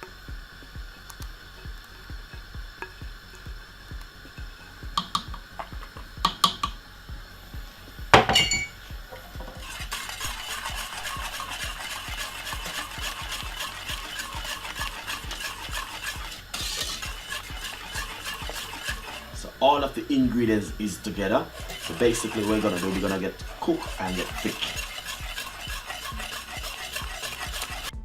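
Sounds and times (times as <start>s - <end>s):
porridge stirred in pot: 0.0s - 6.7s, 9.1s - 28.0s
utensil knocking on metal pot: 5.0s - 6.8s, 8.2s - 9.6s, 21.6s - 27.9s.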